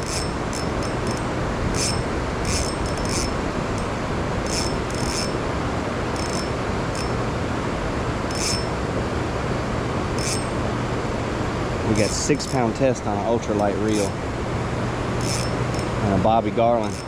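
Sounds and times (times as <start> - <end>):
fishing reel drag zips: 0.0 - 5.4, 6.1 - 7.2, 8.3 - 8.7, 10.2 - 10.6, 11.9 - 12.7, 13.9 - 14.2, 15.2 - 16.0
water and wind rushing: 0.0 - 16.9.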